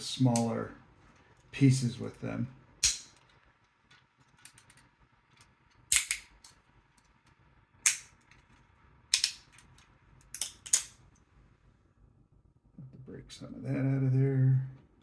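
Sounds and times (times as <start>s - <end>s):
plastic snapping and cracking: 2.8s - 6.6s, 9.1s - 11.0s.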